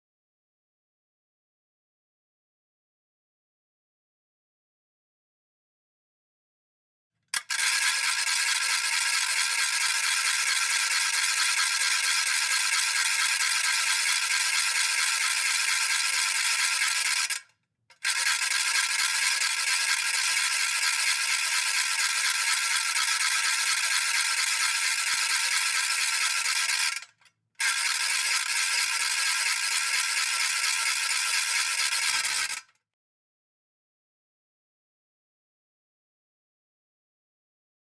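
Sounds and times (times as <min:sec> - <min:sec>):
spinning noisemaker rattling: 0:07.4 - 0:32.6.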